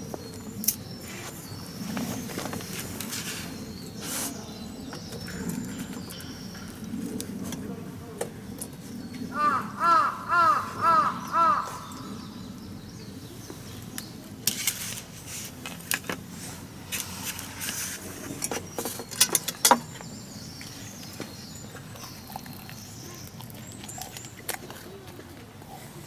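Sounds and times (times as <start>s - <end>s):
bird calling: 9.1s - 13.2s.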